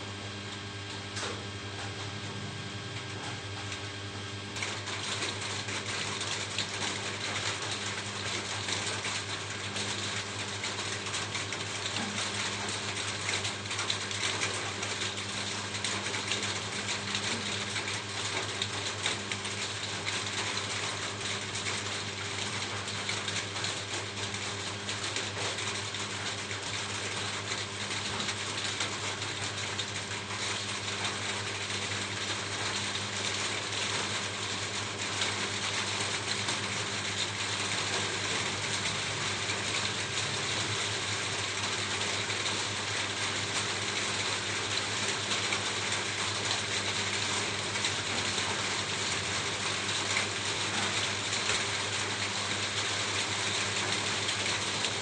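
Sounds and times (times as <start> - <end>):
rain drumming on a roof: 0.2 - 55.0.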